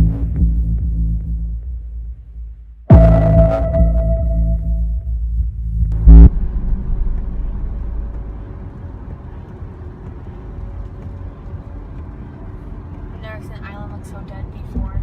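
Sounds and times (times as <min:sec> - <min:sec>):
car engine low rumble: 0:04.0 - 0:15.0
road noise inside car: 0:05.1 - 0:15.0
loud brief thump: 0:06.0 - 0:08.3.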